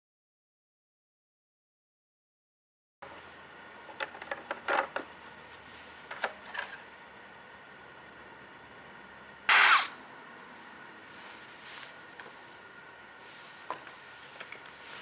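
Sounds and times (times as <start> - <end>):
starter cord rasp: 9.5 - 10.0.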